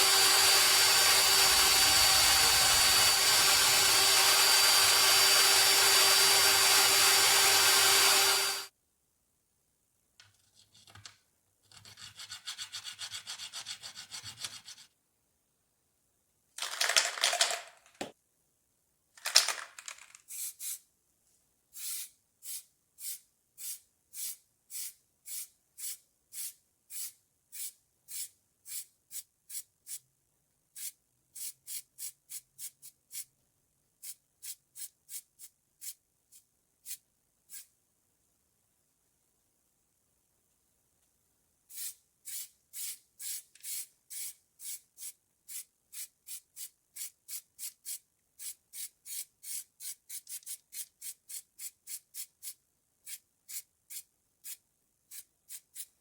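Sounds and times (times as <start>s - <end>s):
power tool running: 0.0s - 8.7s.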